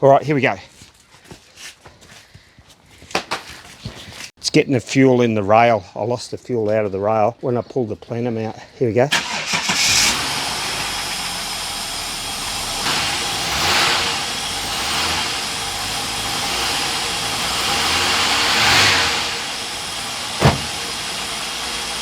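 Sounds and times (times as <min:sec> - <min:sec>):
car engine idling unevenly: 0:09.2 - 0:22.0
engine revving: 0:09.2 - 0:22.0.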